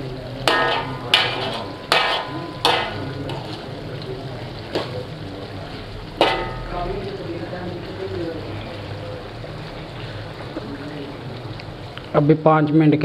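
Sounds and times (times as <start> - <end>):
food sizzling in a pot: 0.0 - 13.0
spoon knocking against pot: 0.5 - 3.6.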